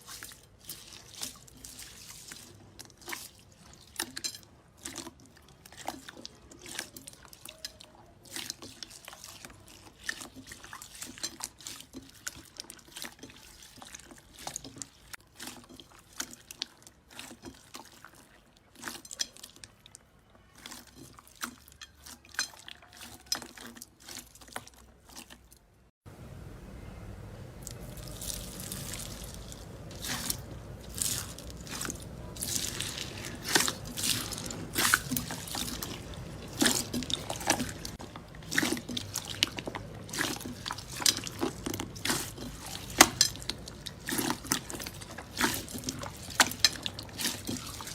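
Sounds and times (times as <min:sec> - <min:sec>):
low background noise: 0:25.5 - 0:47.9.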